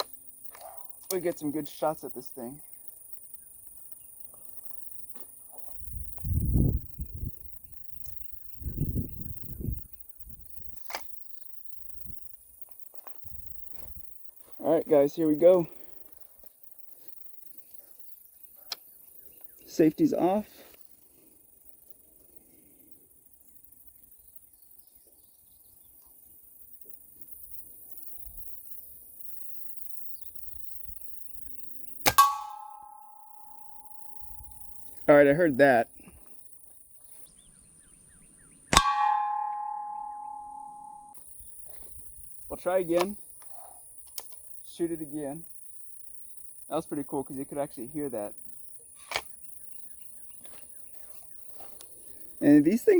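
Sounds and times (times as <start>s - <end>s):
wind buffeting microphone: 5.8s - 7.8s, 8.5s - 10.5s
metal tank ringing: 32.1s - 34.1s, 38.8s - 41.1s
air rifle firing: 38.7s - 39.7s
sharp click: 49.1s - 49.3s.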